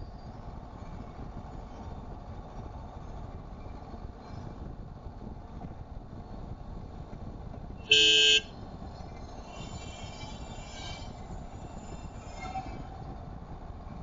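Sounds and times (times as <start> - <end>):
car driving on road: 0.0 - 14.0
car horn beep: 7.9 - 8.5.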